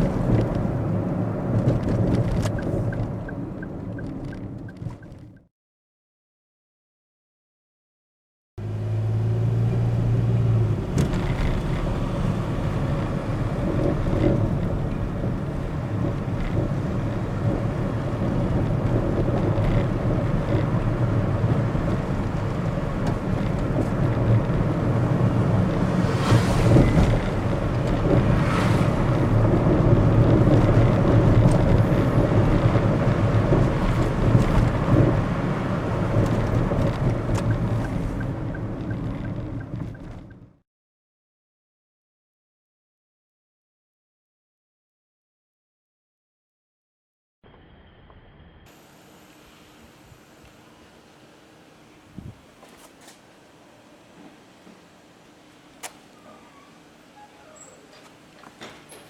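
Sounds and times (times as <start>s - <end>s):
car road noise: 0.0s - 5.4s, 8.6s - 40.6s.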